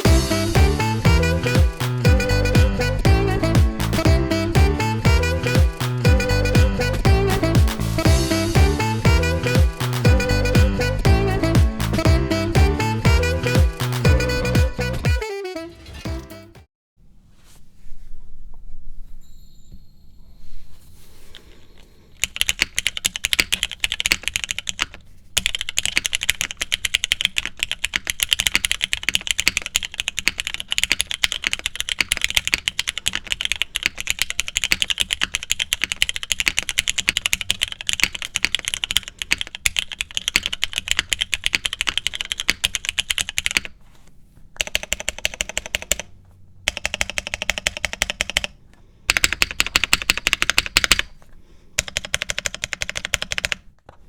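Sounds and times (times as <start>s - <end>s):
fast typing on mechanical keyboard: 22.2s - 43.7s, 44.6s - 46.1s, 46.7s - 51.2s, 51.8s - 53.7s.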